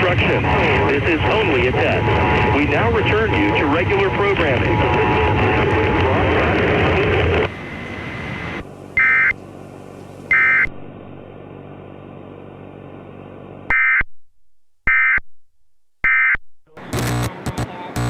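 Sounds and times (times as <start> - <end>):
loud static: 0.0 - 9.4, 16.0 - 18.0
low hum: 0.0 - 18.0
harsh two-tone data bursts: 14.9 - 15.2, 16.0 - 18.0.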